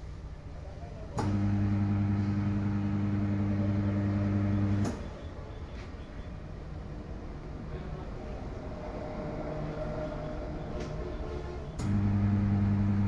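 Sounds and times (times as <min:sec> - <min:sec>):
electric motor humming: 0:01.2 - 0:04.9, 0:11.8 - 0:13.0.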